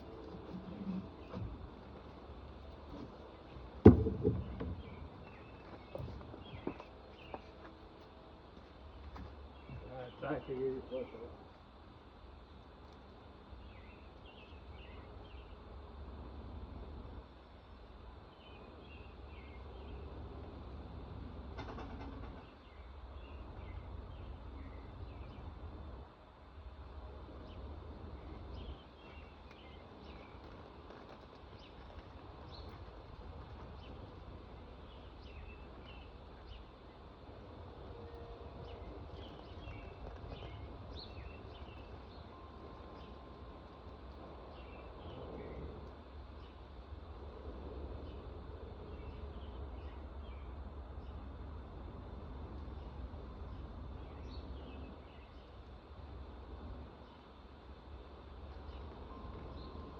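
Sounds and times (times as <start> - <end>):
small birds chirping: 0.0 - 15.8, 17.6 - 20.4, 21.7 - 25.8, 27.4 - 47.1, 47.9 - 51.4, 52.6 - 59.9
steady low rumble: 22.6 - 59.9.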